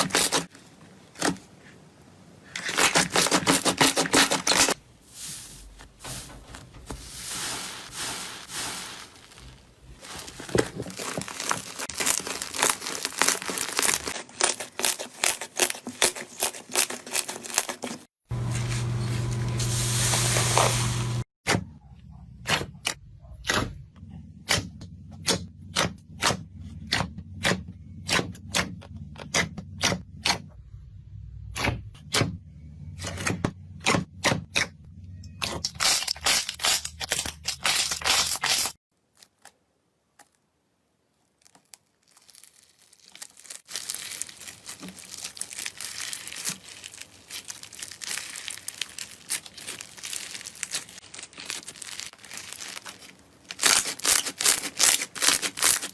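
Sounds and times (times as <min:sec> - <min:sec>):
slime crinkly crunching: 0:06.8 - 0:18.8, 0:41.0 - 0:55.9
slime crackling: 0:07.2 - 0:17.8, 0:41.2 - 0:55.9.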